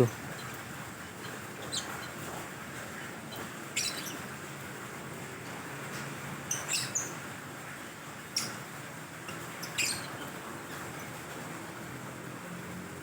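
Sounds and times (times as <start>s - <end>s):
birds chirping: 0.0s - 4.4s, 6.4s - 7.2s, 9.3s - 11.2s.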